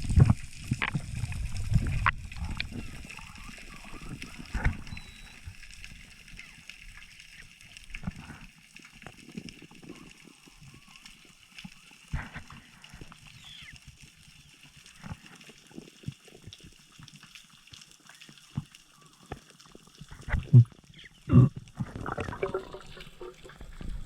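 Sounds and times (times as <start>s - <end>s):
underwater clicks and crackles: 0.0s - 24.0s
water movement: 0.0s - 24.0s.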